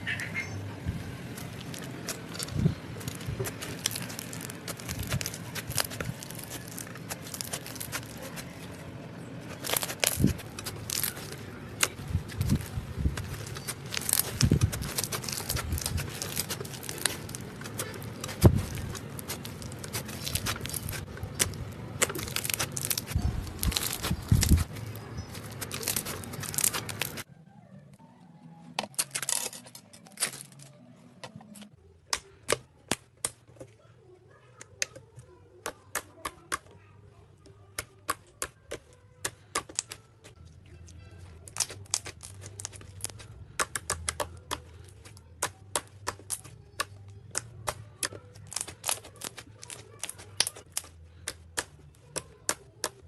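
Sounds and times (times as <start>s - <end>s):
slime crackling and snapping: 1.3s - 8.8s, 9.5s - 27.3s, 38.1s - 40.0s, 41.4s - 53.0s.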